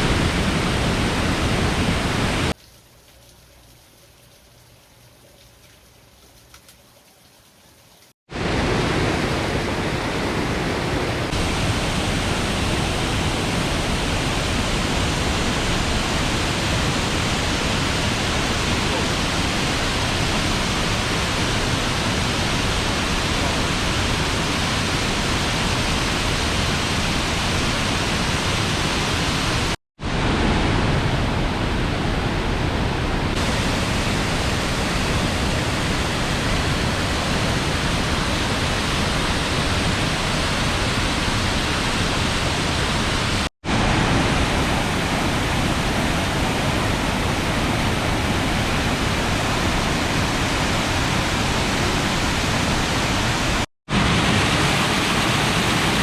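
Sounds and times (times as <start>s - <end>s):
river water rushing over rocks: 33.4s - 56.0s.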